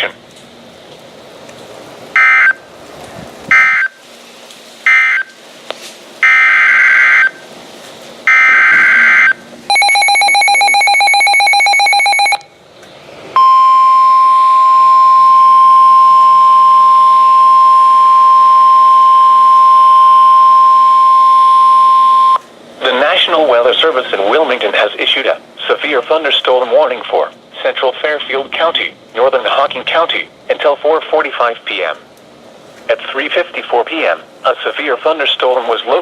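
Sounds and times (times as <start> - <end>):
steady warning alarm tone: 2.2 - 2.7, 3.5 - 4.0, 4.9 - 5.4, 6.2 - 7.5, 8.3 - 12.5, 13.4 - 22.4
rapidly pulsing alert beep: 8.3 - 12.4
warbling data bursts: 8.3 - 12.4.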